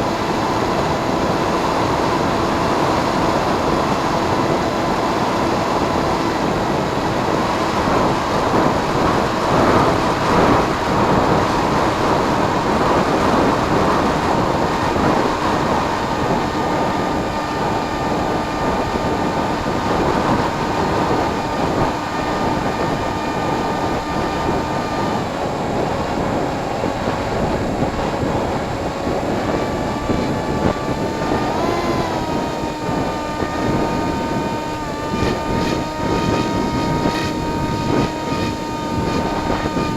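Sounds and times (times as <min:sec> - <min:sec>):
model plane motor whine: 0:00.0 - 0:39.9
wind rush on microphone: 0:00.0 - 0:39.9.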